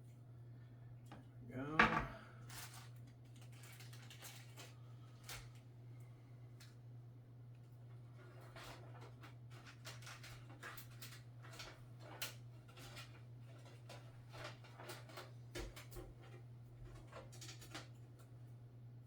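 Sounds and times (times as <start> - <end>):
clicks and rustles of cables: 2.4 - 5.7, 7.6 - 18.4.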